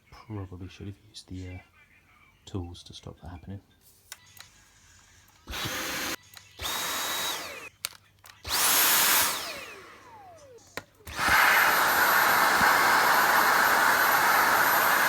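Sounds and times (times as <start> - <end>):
vacuum cleaner whine: 5.5 - 7.7, 8.4 - 15.0.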